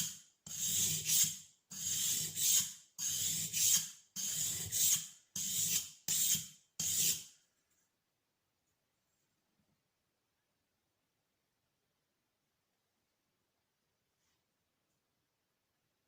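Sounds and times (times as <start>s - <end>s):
blade scraping on sharpening stone: 0.0s - 7.3s.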